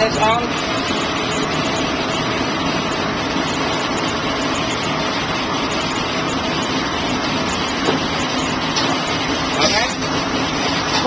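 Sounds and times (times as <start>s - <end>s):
kitchen equipment rushing noise: 0.0s - 11.0s.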